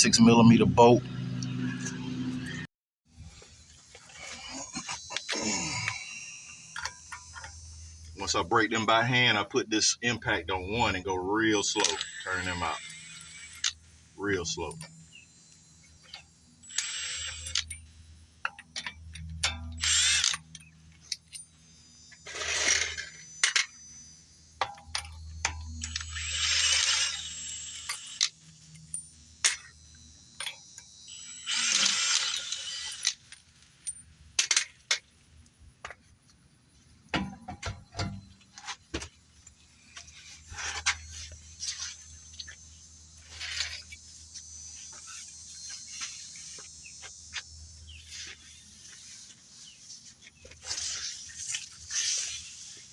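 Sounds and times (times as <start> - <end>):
impact wrench running: 11.7 - 13.8, 15.4 - 17.8, 18.8 - 20.5, 24.6 - 29.8, 30.4 - 33.4.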